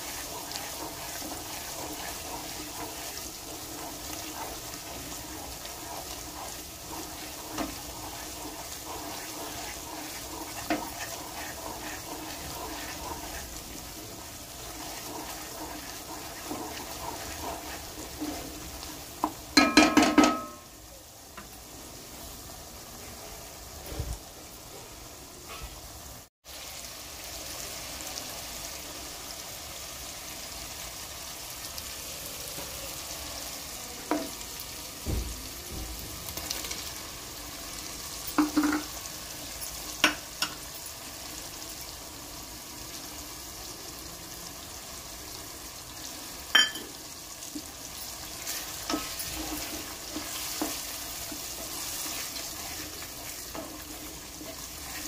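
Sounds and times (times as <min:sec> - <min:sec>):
chicken sizzling in hot oil: 0:00.0 - 0:55.0
utensil knocking against pan: 0:19.2 - 0:20.6.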